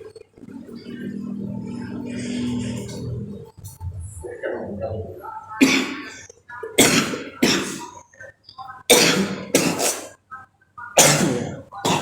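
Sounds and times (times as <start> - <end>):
person coughing hard: 5.6 - 6.2, 6.8 - 7.9, 8.9 - 10.1, 11.0 - 12.0.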